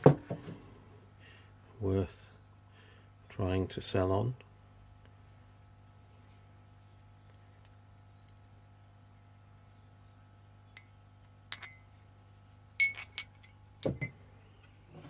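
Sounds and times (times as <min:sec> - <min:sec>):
faint steady hum: 0:00.0 - 0:15.0
metal hand tools clinking: 0:11.5 - 0:12.0, 0:12.8 - 0:14.1.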